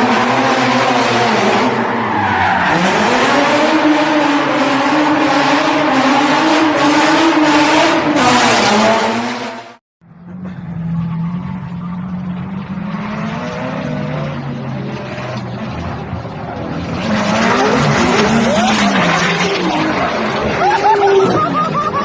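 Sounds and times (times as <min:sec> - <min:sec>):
tyres squealing and skidding: 0:00.3 - 0:04.6, 0:10.3 - 0:15.6, 0:16.4 - 0:22.0
car engine revving hard: 0:02.7 - 0:09.8.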